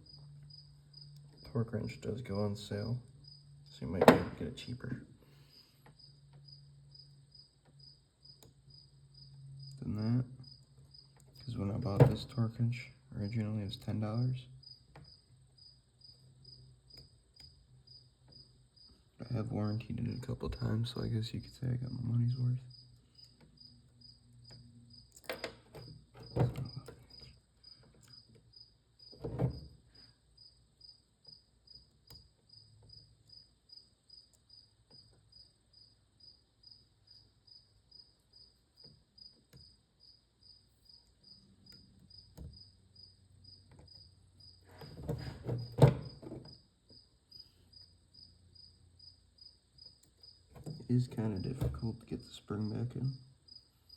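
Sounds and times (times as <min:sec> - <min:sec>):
cricket chirping: 0:00.0 - 0:53.9.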